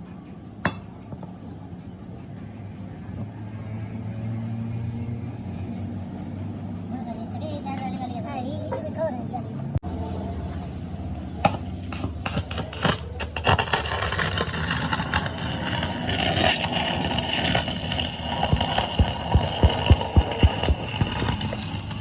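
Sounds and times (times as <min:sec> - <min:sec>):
engine humming: 0:09.0 - 0:22.0.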